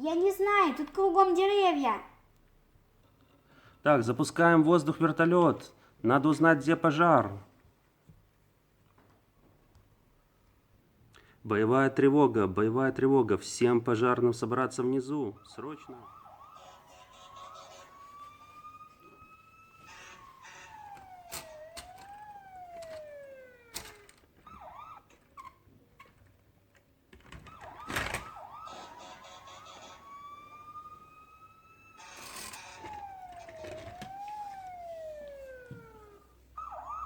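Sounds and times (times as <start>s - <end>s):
siren wailing and yelping: 14.7s - 25.7s, 27.3s - 37.0s.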